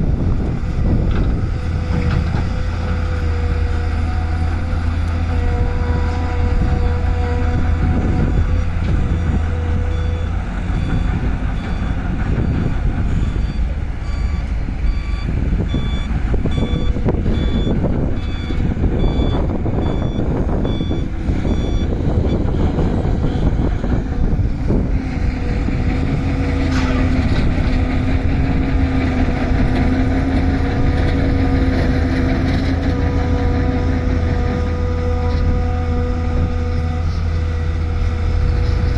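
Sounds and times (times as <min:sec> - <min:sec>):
diesel engines running: 0:00.0 - 0:38.9
reversing alarm beeping: 0:05.9 - 0:23.5.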